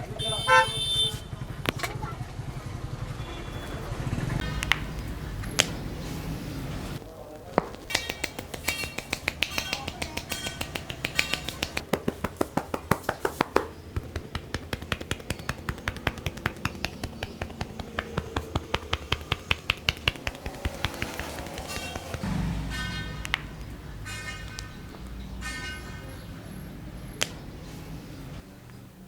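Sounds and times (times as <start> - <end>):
hands tapping on head: 7.6 - 22.3.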